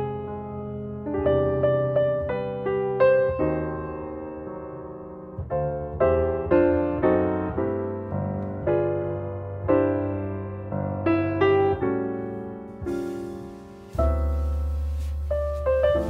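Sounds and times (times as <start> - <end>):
slow piano music: 0.0 - 16.0.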